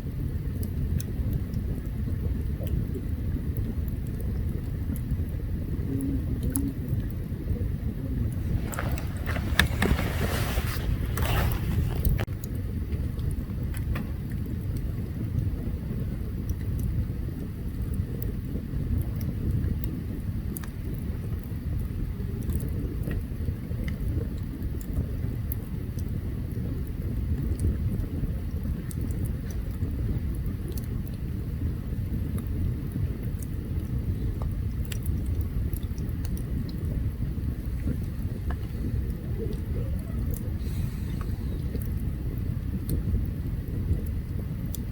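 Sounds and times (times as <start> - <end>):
fire low rumble: 0.0 - 44.9
campfire crackling and popping: 9.9 - 44.9
fire hissing: 40.5 - 41.8.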